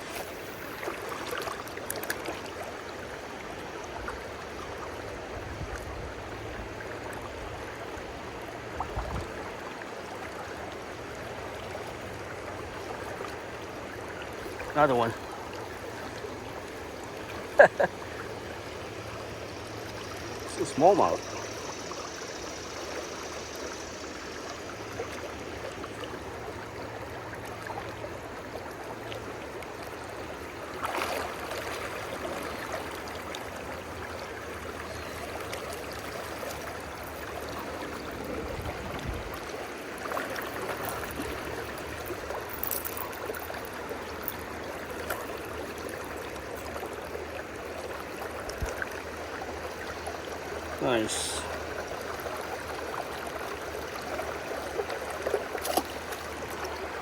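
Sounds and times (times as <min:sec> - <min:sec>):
river water rushing: 0:00.0 - 0:05.4, 0:22.7 - 0:57.0.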